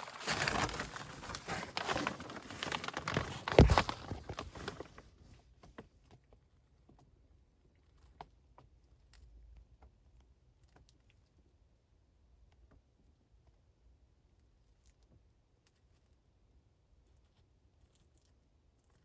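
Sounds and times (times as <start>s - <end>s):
rustling and scraping movement: 0.0s - 5.5s.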